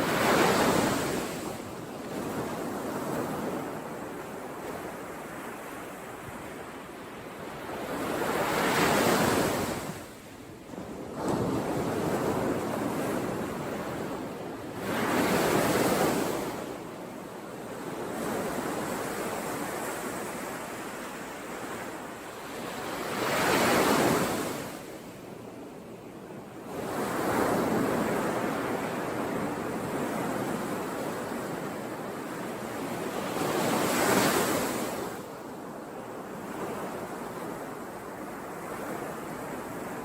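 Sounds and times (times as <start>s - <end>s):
waves breaking on shore: 0.0s - 6.8s, 17.8s - 24.9s, 26.7s - 40.0s.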